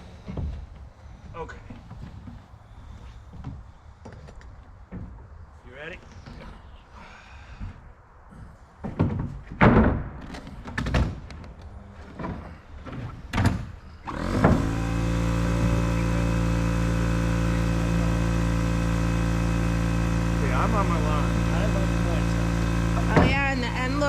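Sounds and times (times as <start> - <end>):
knocks and thumps of roof building: 0.1 - 2.5, 3.3 - 5.3, 7.5 - 14.8
motor running: 14.0 - 24.0.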